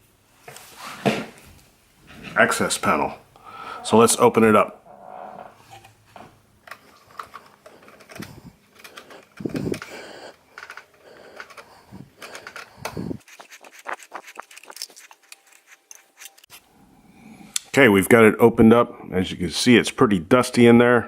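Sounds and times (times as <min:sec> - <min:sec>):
scratching and scraping: 0:02.0 - 0:16.7.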